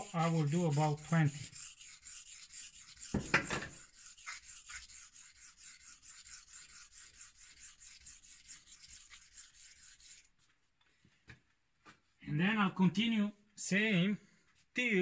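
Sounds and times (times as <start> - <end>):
razor scraping on whetstone: 0.0 - 10.4
thump: 3.2 - 3.7.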